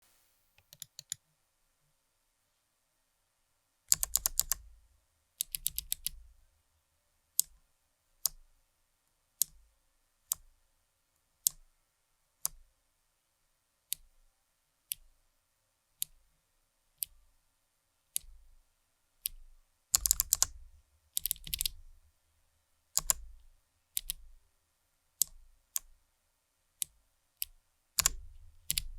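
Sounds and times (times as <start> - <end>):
mechanical keyboard clicky typing: 0.6 - 1.2, 3.9 - 4.6, 5.4 - 6.2, 20.0 - 20.6, 21.2 - 21.8, 23.0 - 23.3, 24.0 - 24.2, 28.0 - 28.9.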